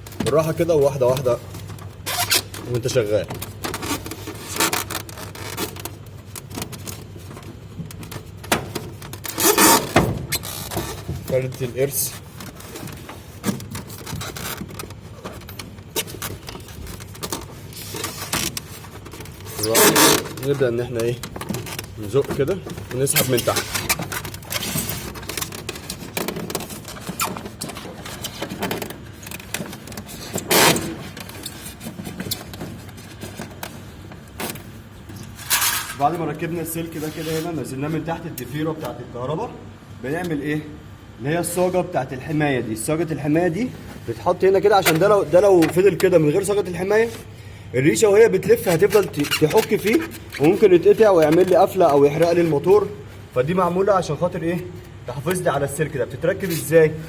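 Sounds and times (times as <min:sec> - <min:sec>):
rustling: 0:00.0 - 0:38.8
scraping rustle: 0:00.2 - 0:39.0, 0:48.4 - 0:57.0
loud scrape: 0:35.4 - 0:36.0.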